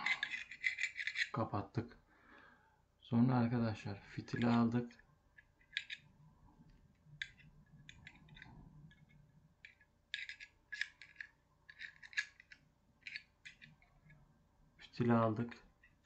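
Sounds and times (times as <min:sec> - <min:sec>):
light metal scrapes: 0:00.0 - 0:01.4.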